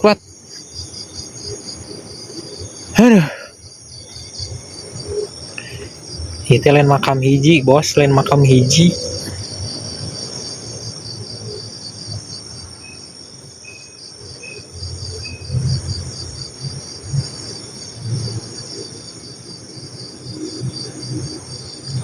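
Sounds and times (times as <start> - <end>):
crickets chirping: 0.0 - 22.0.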